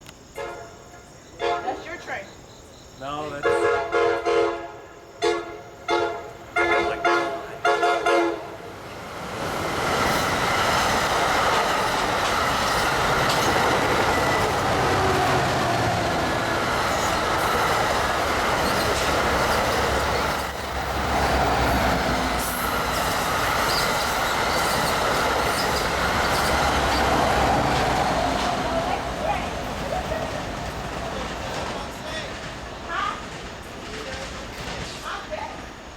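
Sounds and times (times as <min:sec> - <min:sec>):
train horn short blasts: 0:00.4 - 0:02.0, 0:03.3 - 0:08.6
wheels rumbling on rails: 0:06.2 - 0:35.9.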